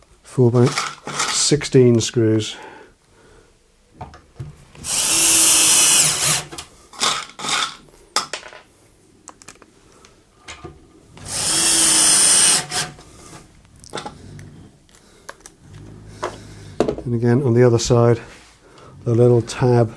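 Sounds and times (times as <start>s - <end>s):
cordless drill driving screws: 4.8s - 7.7s, 11.2s - 13.4s.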